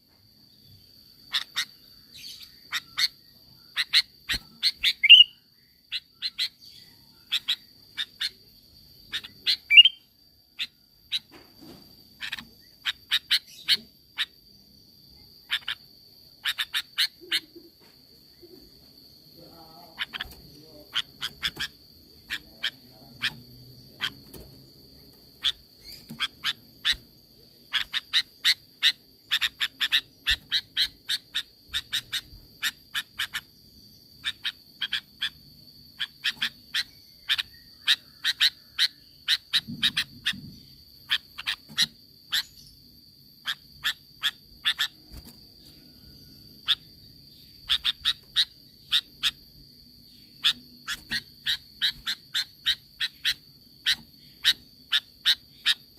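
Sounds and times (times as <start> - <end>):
bird calling in sharp notes: 3.8 - 6.6, 9.1 - 10.0.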